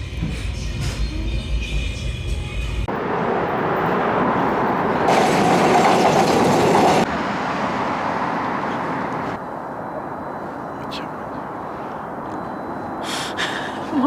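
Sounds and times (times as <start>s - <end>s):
moving vehicle rumbling: 2.8s - 14.0s.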